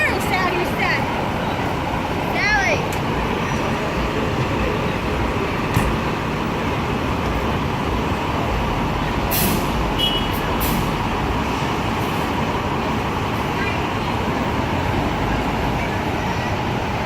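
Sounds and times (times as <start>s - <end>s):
city traffic noise: 0.0s - 17.0s
fire engine running: 0.0s - 17.0s
air brake hisses: 9.3s - 9.8s.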